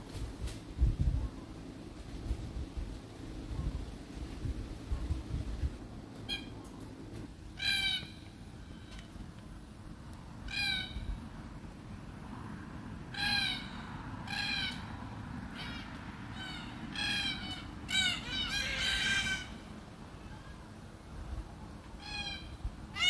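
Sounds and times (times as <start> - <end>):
cockatoo calling: 6.2 - 6.8, 7.5 - 9.2, 10.4 - 11.2, 13.1 - 20.8, 21.9 - 23.0.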